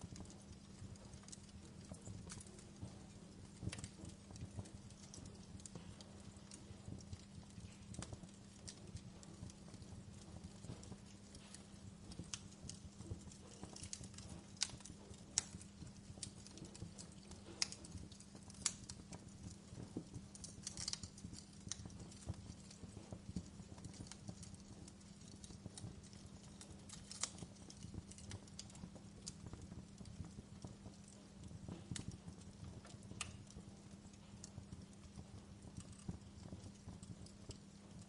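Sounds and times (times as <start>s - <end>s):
wood fire crackling: 0.0s - 38.0s.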